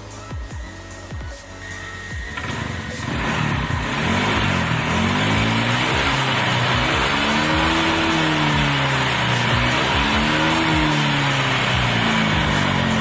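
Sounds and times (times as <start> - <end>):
scooter engine revving: 0.3 - 13.0.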